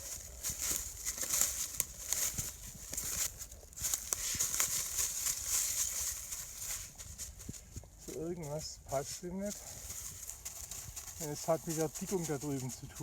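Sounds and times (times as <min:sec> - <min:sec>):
twigs snapping: 0:00.0 - 0:08.2
footsteps in leaf litter: 0:00.0 - 0:13.0.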